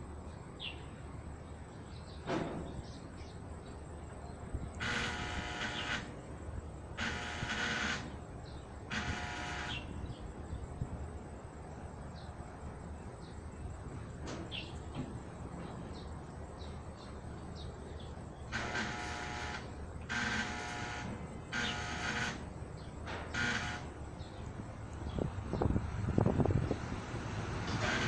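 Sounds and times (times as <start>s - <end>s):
metal grille buzzing: 4.8s - 10.3s, 18.4s - 28.0s.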